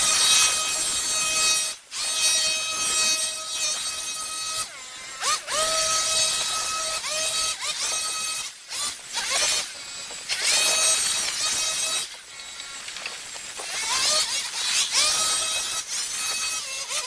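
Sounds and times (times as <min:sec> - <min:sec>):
hedge trimmer whining: 0:04.6 - 0:17.0.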